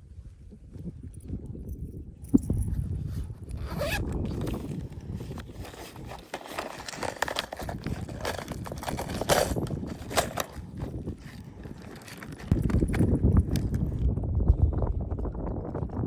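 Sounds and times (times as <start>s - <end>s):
handling scraping and rustling: 2.2s - 14.0s.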